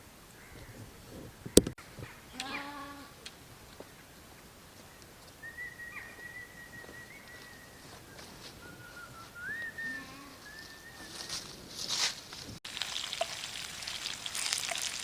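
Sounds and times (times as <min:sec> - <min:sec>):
high whistled note: 0:08.6 - 0:11.3.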